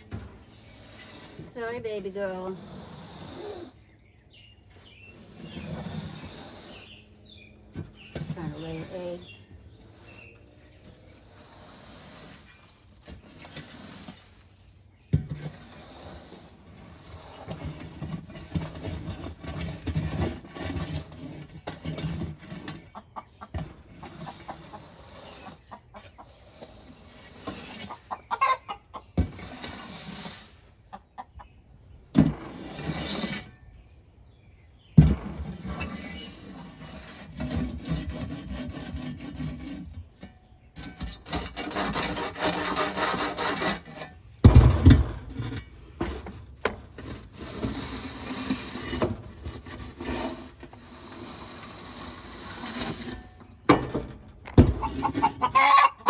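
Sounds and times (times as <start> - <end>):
bedding scraping: 0.0 - 56.0
hen clucking: 22.8 - 26.8, 27.6 - 29.4, 30.8 - 31.7, 54.6 - 56.0.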